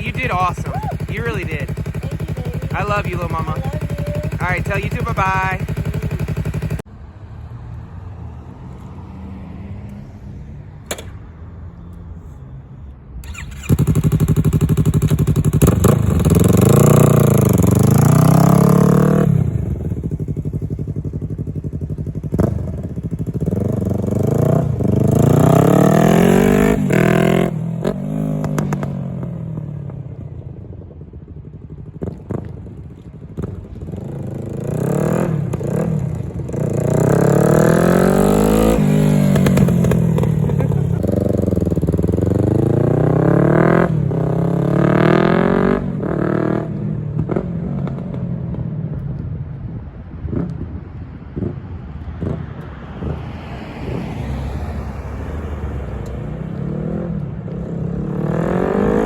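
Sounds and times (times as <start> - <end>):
motorcycle engine revving: 0.0 - 6.9, 13.2 - 49.0, 56.3 - 59.0.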